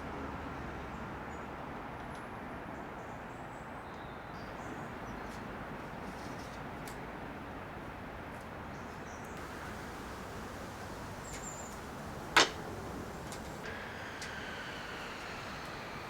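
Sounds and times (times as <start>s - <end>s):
faint ticks: 9.4s - 16.0s
faint whine: 9.4s - 16.0s
outdoor background hiss: 9.4s - 16.0s.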